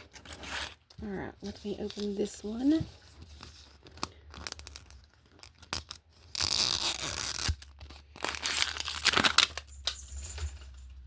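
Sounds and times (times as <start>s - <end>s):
plastic wrap crinkling: 0.0s - 9.9s
plastic wrap ripping: 4.4s - 9.7s.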